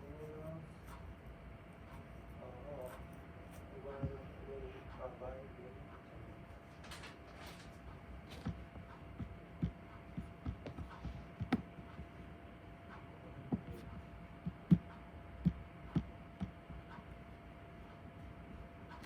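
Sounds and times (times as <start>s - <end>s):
faint hum: 0.0s - 19.0s
soft taps and knocks on desk: 8.4s - 12.1s, 13.5s - 16.9s.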